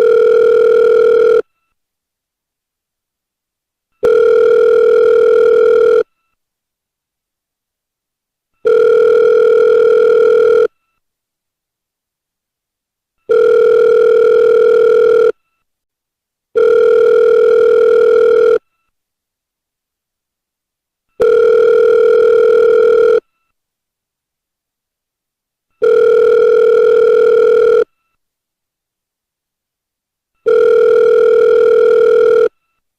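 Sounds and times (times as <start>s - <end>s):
phone ringback tone: 0.0s - 1.5s, 4.0s - 6.2s, 8.6s - 10.8s, 13.3s - 15.4s, 16.6s - 18.7s, 21.2s - 23.5s, 25.8s - 28.1s, 30.4s - 32.8s.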